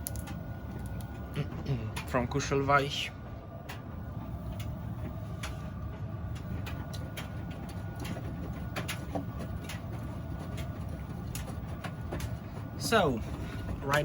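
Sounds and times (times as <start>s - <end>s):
washing machine water sloshing: 3.4s - 14.0s.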